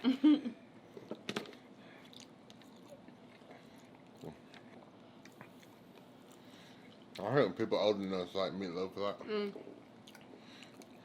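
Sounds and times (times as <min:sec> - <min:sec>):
chewing and biting food: 0:02.0 - 0:07.3, 0:09.7 - 0:11.0.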